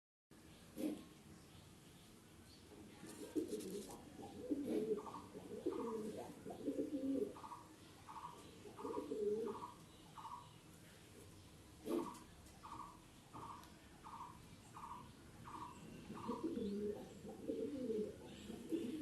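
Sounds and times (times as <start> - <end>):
pigeon cooing: 0.7 - 1.1, 3.2 - 10.4, 11.8 - 19.0.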